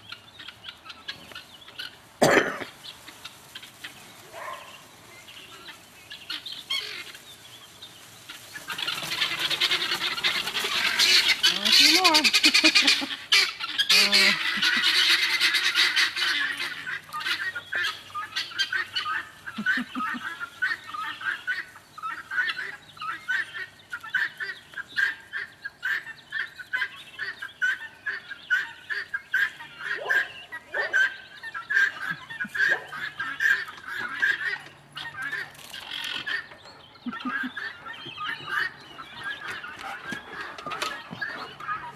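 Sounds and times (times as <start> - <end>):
flock of fowl calling: 0.0 - 41.9.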